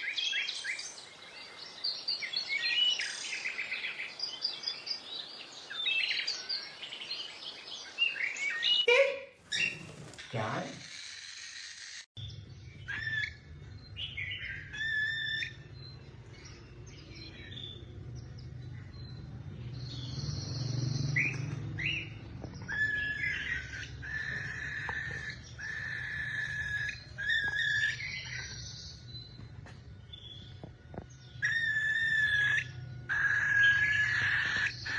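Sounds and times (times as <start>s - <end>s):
parrot whistling and chirping: 8.2s - 10.2s, 12.8s - 15.8s, 21.2s - 28.9s, 31.4s - 34.9s.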